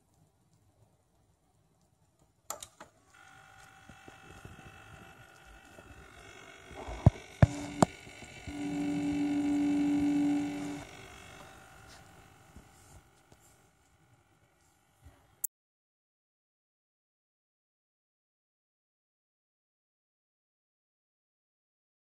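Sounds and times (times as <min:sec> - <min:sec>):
water cooler pump whine: 0:03.1 - 0:15.0
low buzz: 0:03.2 - 0:15.0
sharp clicks: 0:03.9 - 0:12.7.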